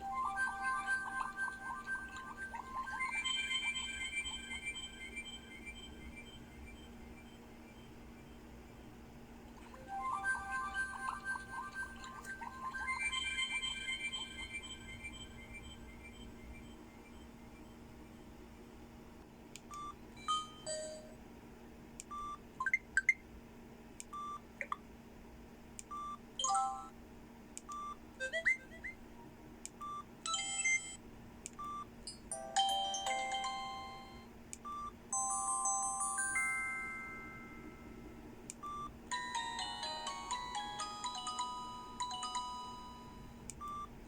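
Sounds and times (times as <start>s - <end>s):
polyphonic phone ringtone: 0.0s - 5.7s, 9.7s - 15.6s, 32.4s - 34.3s, 35.1s - 37.9s, 39.1s - 43.3s.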